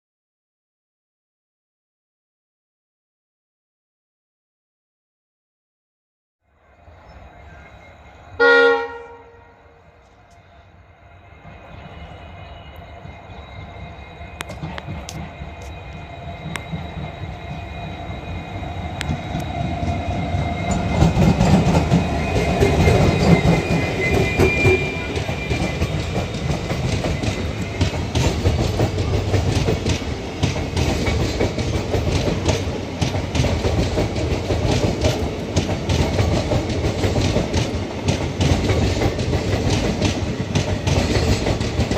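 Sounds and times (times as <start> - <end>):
diesel train passing: 6.5 - 41.9
high wheel squeal: 9.8 - 29.3
train wheels clattering over points: 13.8 - 41.9.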